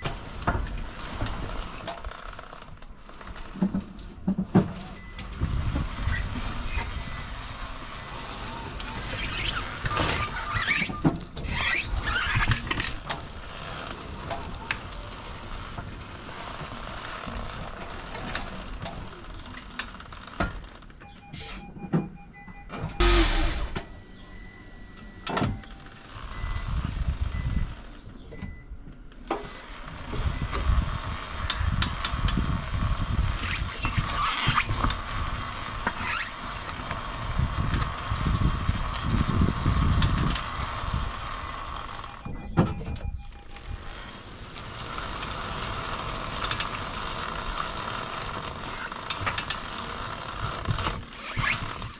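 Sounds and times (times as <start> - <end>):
car moving slowly: 0.0 - 21.1, 21.8 - 51.9
clicking from car running gear: 8.2 - 20.9, 29.1 - 32.5, 33.1 - 51.9.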